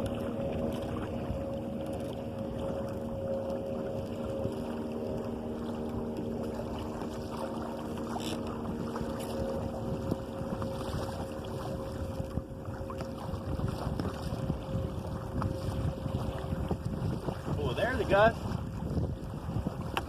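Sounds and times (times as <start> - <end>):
steady low hum: 0.0 - 20.0
water rushing past canoe: 0.0 - 20.0.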